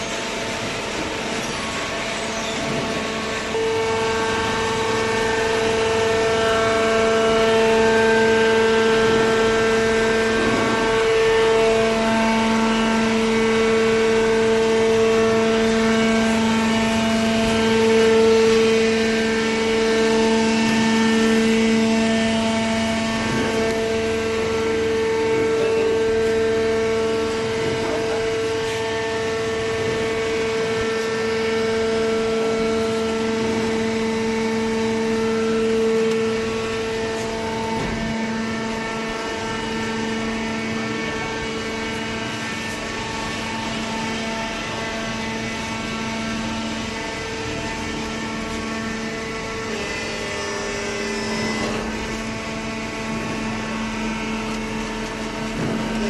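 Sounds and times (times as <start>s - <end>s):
hydraulic baler machine hum: 0.0s - 56.0s.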